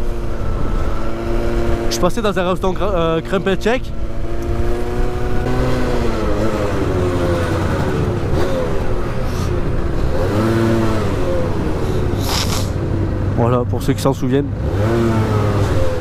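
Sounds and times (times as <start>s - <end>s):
scooter engine running: 4.1s - 13.3s.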